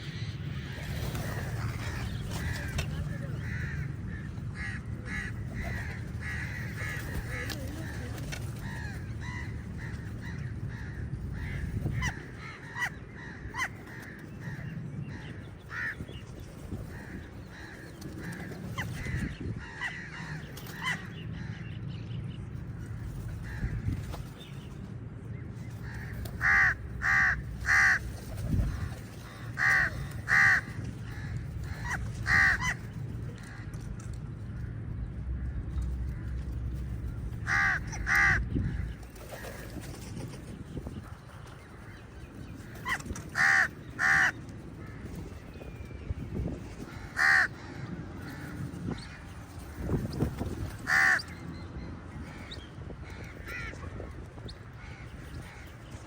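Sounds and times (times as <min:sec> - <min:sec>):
steady low rumble: 0:00.0 - 0:56.0
crows cawing: 0:01.5 - 0:16.2, 0:16.9 - 0:21.7, 0:25.8 - 0:33.8, 0:37.1 - 0:39.0, 0:42.6 - 0:45.1, 0:46.8 - 0:49.3, 0:50.8 - 0:51.4, 0:52.4 - 0:53.8.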